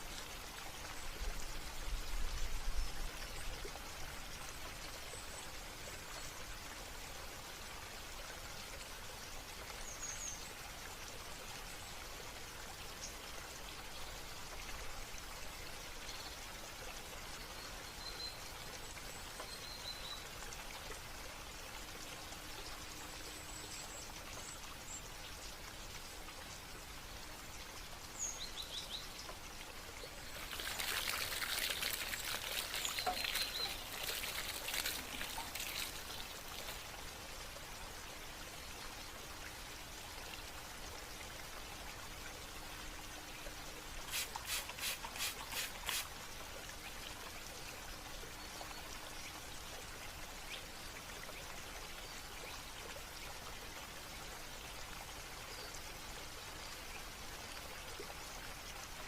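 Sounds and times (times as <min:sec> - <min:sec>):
water trickling: 0:00.0 - 0:59.0
water pouring and splashing: 0:30.1 - 0:37.1, 0:44.0 - 0:46.2.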